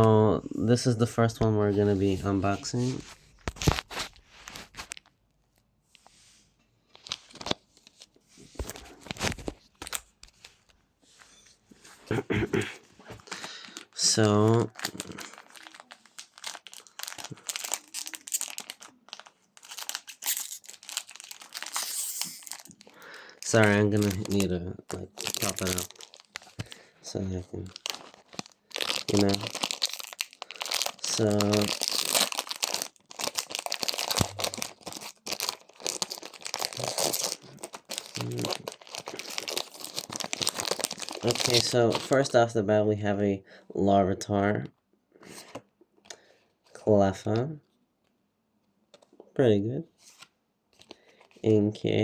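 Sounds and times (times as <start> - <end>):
foil wrapper crinkling and tearing: 13.2 - 26.9, 27.5 - 42.4.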